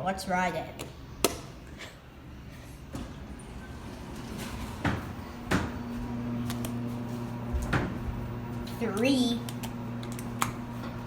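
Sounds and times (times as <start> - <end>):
elevator doors sliding shut: 3.0 - 5.9.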